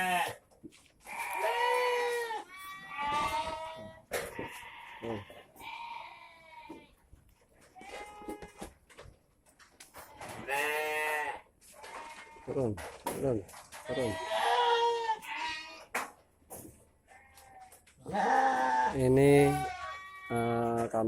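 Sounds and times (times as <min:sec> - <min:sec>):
goats bleating: 0:00.0 - 0:00.4, 0:01.0 - 0:07.0, 0:07.8 - 0:08.7, 0:10.2 - 0:12.5, 0:13.8 - 0:15.9, 0:17.1 - 0:20.8.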